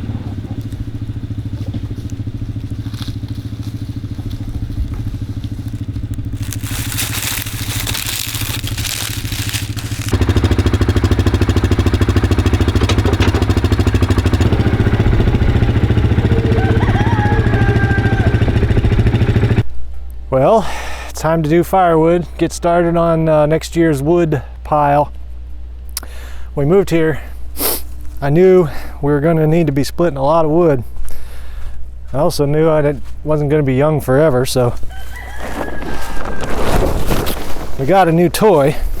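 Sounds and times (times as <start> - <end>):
small gasoline engine running: 0.0 - 19.6
wood cracking and crushing: 1.7 - 16.2, 34.8 - 39.0.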